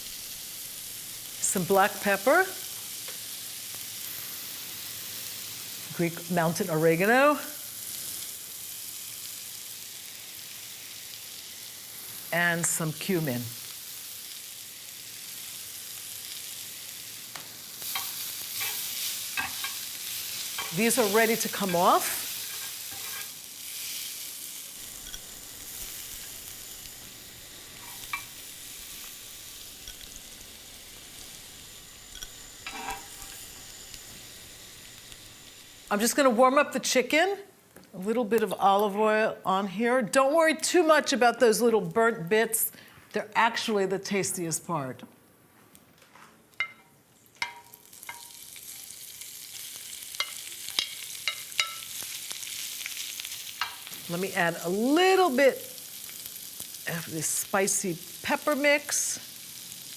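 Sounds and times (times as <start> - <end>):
vegetables sizzling in oil: 0.0 - 39.2, 46.6 - 59.9
utensil clinking against pan: 46.6 - 48.3.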